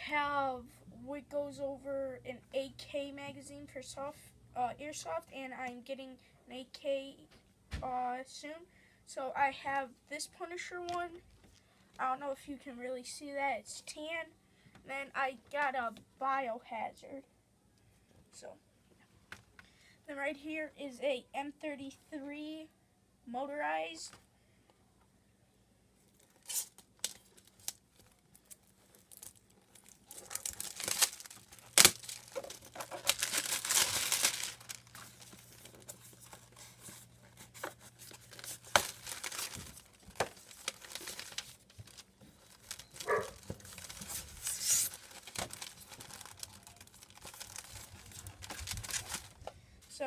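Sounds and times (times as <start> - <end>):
packaging being torn and crumpled: 26.2 - 49.4.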